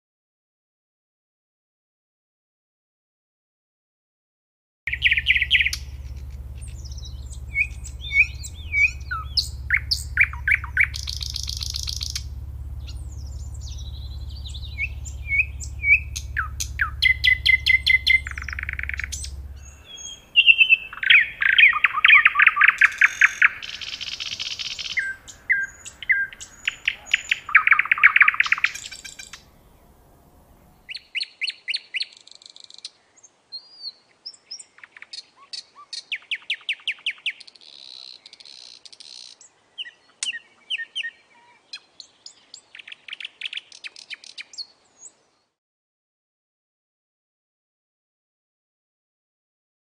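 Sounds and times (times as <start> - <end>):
faint low hum: 4.9 - 30.9
nightingale singing: 4.9 - 45.2.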